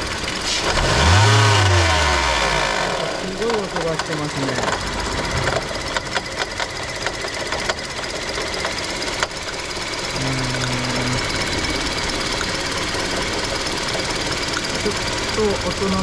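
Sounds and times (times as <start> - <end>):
car engine running: 0.0 - 16.0
engine ticking and knocking: 0.0 - 16.0.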